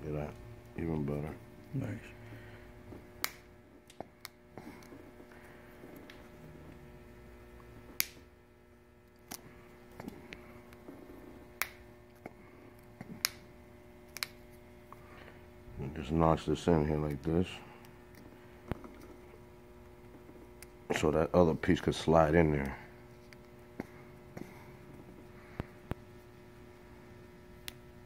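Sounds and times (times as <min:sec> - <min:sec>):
faint steady hum: 0:00.0 - 0:28.0
sharp plastic clicks and snaps: 0:07.9 - 0:08.2, 0:13.0 - 0:13.5, 0:14.1 - 0:14.4.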